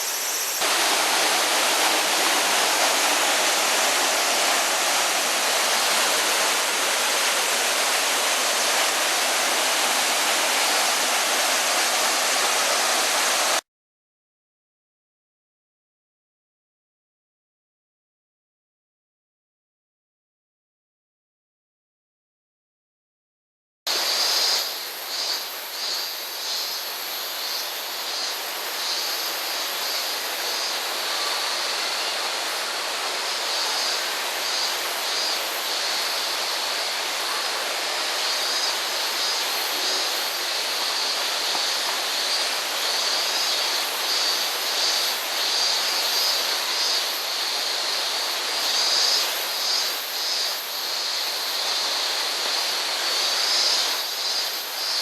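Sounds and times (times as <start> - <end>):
cicadas shrilling in chorus: 0.0 - 13.6, 23.9 - 55.0
rushing water: 0.0 - 13.6, 26.3 - 55.0.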